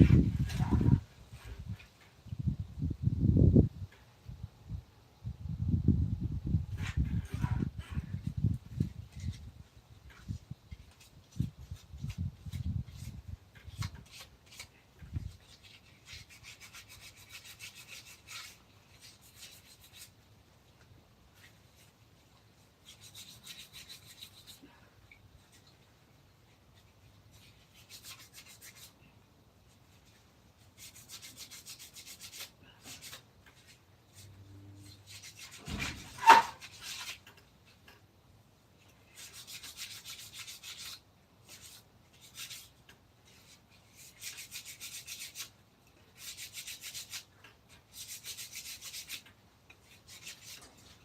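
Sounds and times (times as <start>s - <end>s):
abrasive tool scraping wood: 30.8s - 37.9s.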